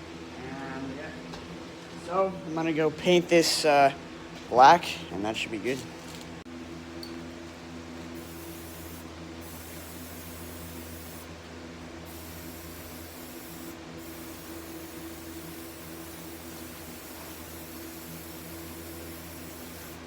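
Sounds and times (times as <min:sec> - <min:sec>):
aerosol spray can hissing: 0:08.2 - 0:11.3, 0:12.1 - 0:20.0.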